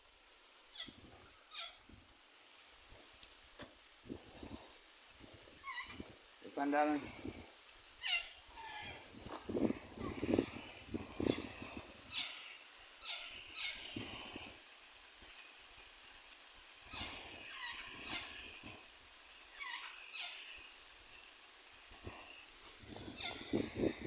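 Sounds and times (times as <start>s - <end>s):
parrot chirping and squawking: 0.7s - 1.9s, 5.5s - 6.2s, 8.0s - 14.3s, 16.9s - 18.7s, 19.5s - 20.8s, 22.9s - 23.8s.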